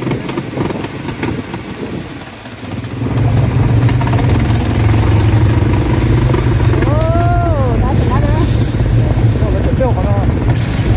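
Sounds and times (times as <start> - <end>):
atv engine running: 0.0 - 10.9.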